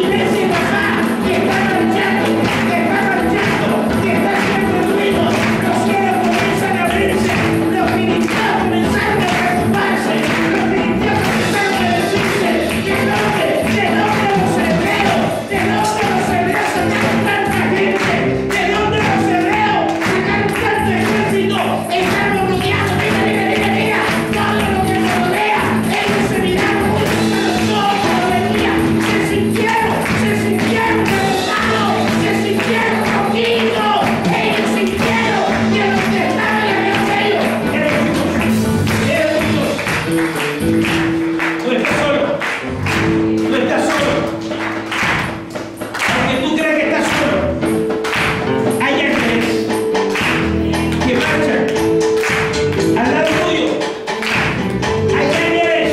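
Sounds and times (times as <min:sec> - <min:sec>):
people singing along: 0:00.0 - 0:39.4
gospel worship music: 0:00.0 - 0:55.9.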